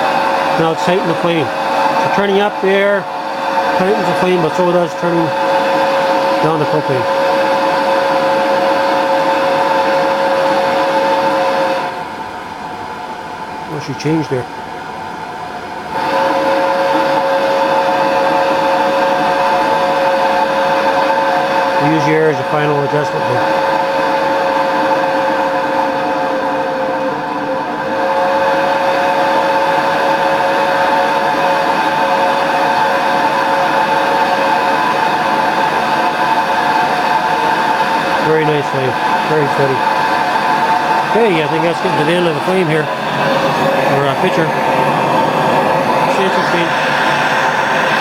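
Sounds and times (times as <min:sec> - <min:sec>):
flame whistle: 0:00.0 - 0:14.4, 0:15.8 - 0:48.0
burner flame roaring: 0:00.0 - 0:48.0
two-tone whistle: 0:16.0 - 0:21.5.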